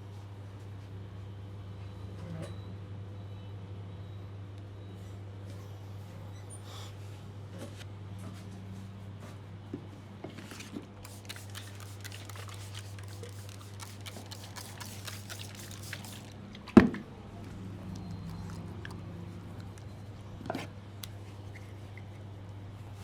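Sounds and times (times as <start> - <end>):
hands rubbing and patting skin: 11.0 - 16.3.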